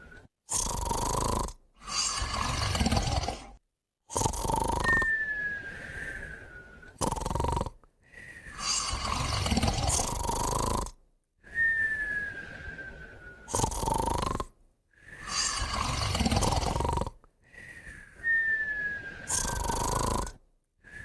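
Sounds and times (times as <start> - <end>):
rasping snores: 0.0 - 5.2, 6.9 - 11.0, 13.4 - 18.0, 18.9 - 20.4
thin nasal whistle: 4.8 - 7.0, 11.5 - 13.8, 17.5 - 21.0.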